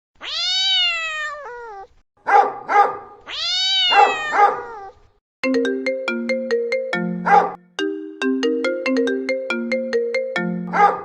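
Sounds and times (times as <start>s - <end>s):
cat meowing: 0.2s - 2.0s, 3.2s - 5.2s
short sharp cat calls: 3.2s - 5.1s
phone ringtone melody: 5.4s - 10.9s.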